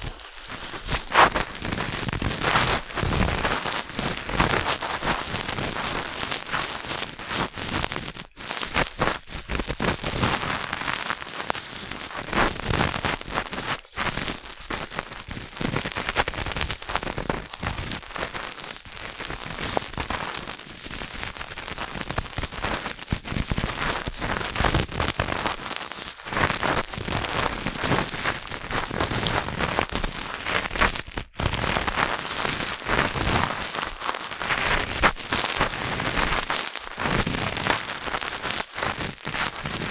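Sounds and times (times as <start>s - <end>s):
cotton swab scratching microphone: 0.0s - 6.8s.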